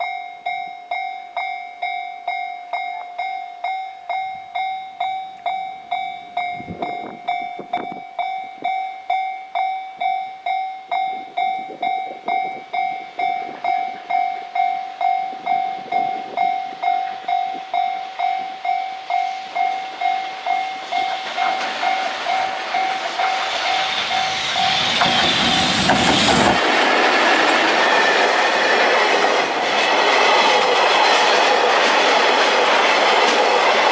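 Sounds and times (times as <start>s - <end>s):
level crossing bell ringing: 0.0s - 24.6s
freight train rumble: 4.0s - 9.2s, 9.9s - 33.9s.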